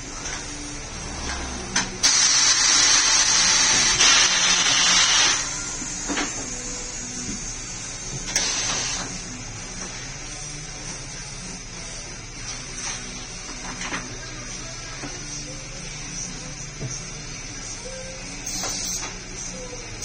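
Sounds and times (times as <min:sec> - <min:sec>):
compressed air hissing: 0:02.0 - 0:09.4, 0:18.4 - 0:19.2.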